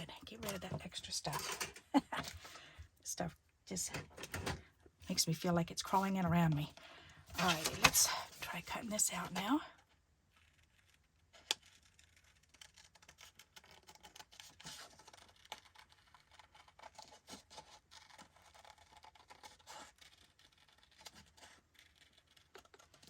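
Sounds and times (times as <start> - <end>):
paper rustling: 6.6 - 9.6.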